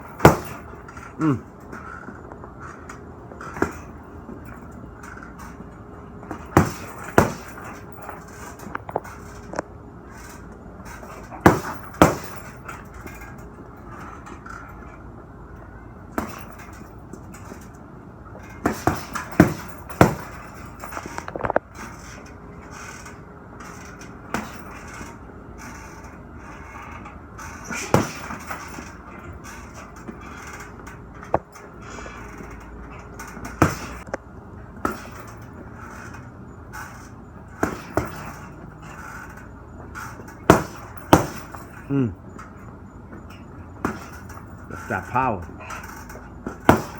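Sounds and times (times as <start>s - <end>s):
punches on heavy bag: 0.1s - 1.4s, 6.3s - 8.2s, 11.3s - 12.7s, 16.2s - 16.8s, 18.6s - 21.0s, 24.3s - 24.8s, 27.6s - 28.9s, 33.5s - 34.0s, 34.8s - 35.3s, 37.6s - 38.5s, 40.4s - 42.1s, 43.8s - 44.2s, 46.4s - 46.9s.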